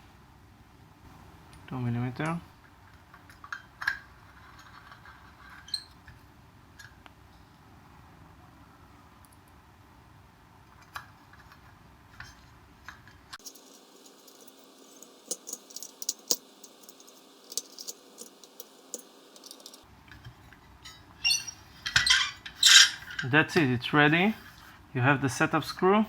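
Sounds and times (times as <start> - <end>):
hex key clicking on metal screws: 13.4 - 19.9.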